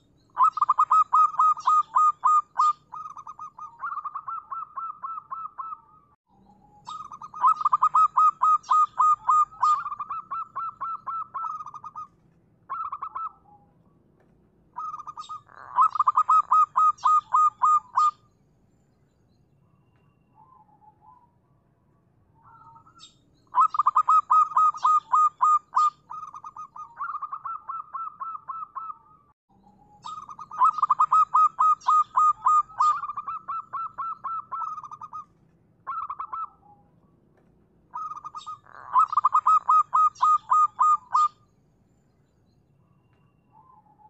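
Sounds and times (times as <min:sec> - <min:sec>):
dove cooing: 0:00.4 - 0:06.0, 0:06.7 - 0:13.6, 0:14.8 - 0:18.2, 0:22.4 - 0:29.2, 0:30.0 - 0:35.3, 0:35.9 - 0:36.8, 0:37.9 - 0:41.4.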